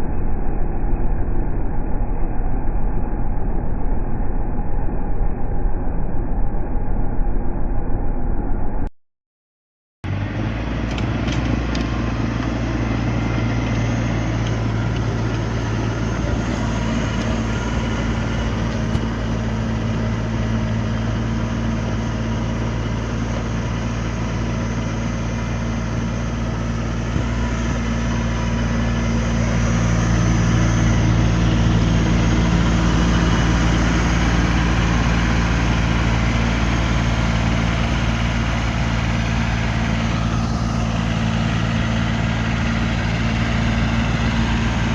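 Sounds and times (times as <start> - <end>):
tractor engine running: 10.0 - 44.9.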